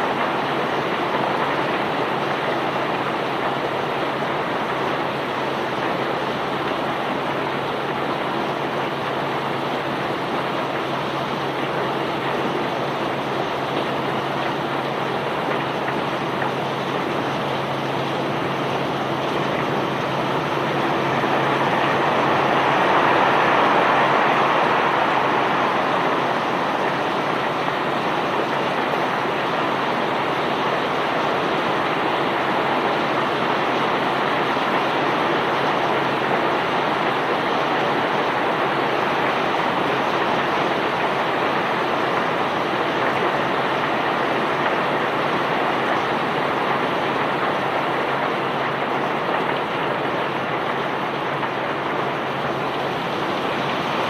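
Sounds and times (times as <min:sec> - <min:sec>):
low engine hum: 0:11.2 - 0:30.8.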